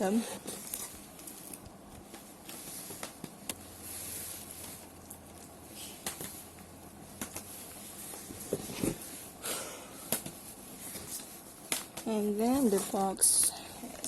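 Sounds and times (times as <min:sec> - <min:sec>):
plastic packaging rustling: 0:00.4 - 0:09.4.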